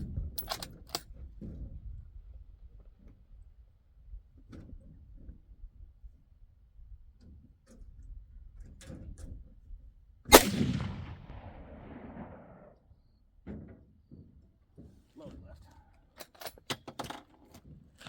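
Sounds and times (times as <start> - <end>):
gunshot with echo: 10.3 - 12.8.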